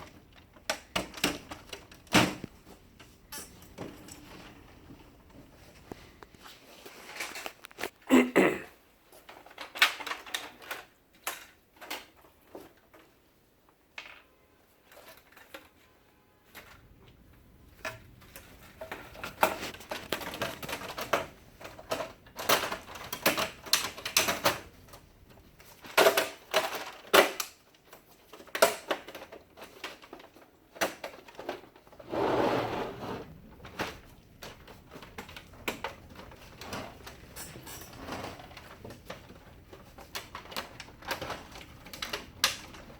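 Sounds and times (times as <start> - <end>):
plastic parts clicking and clattering: 0.0 - 8.0, 9.1 - 13.2, 13.9 - 15.8, 16.5 - 32.0, 33.5 - 42.9
plastic scraping: 31.8 - 37.2.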